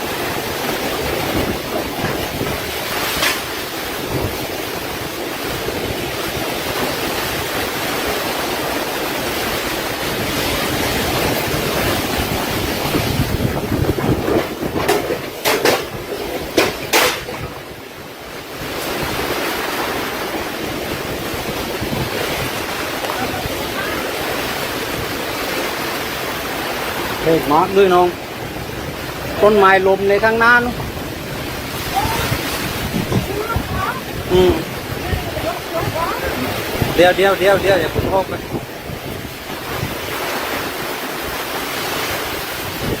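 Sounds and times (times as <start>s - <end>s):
storm wind and rain: 0.0s - 43.0s
wind buffeting microphone: 0.0s - 43.0s
sharp knocks: 14.3s - 17.4s.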